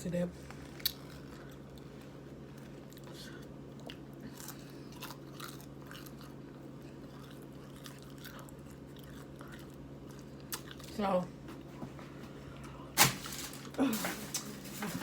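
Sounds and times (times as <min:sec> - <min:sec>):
person chewing food: 0:00.5 - 0:11.0.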